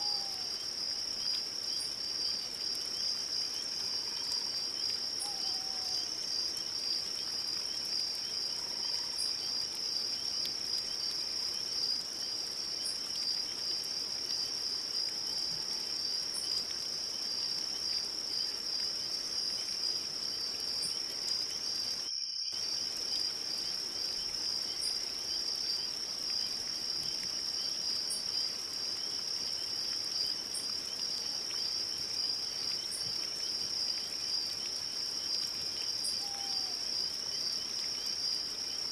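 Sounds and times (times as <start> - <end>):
crickets trilling: 0.0 - 38.9.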